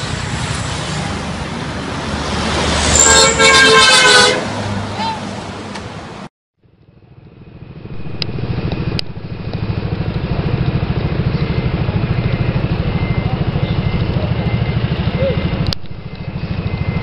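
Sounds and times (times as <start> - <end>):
engine idling: 6.6 - 17.0.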